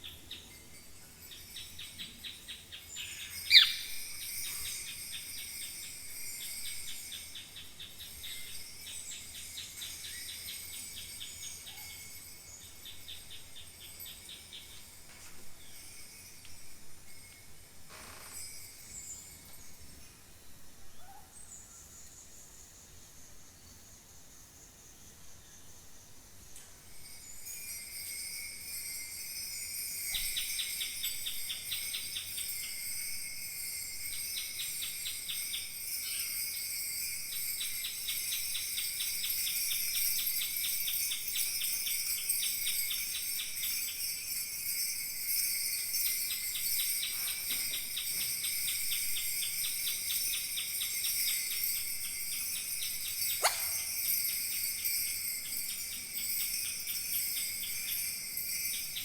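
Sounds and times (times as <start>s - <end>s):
bronze jingle bells shaken: 0.0s - 20.4s, 26.8s - 59.0s
sharp click: 53.4s - 53.7s.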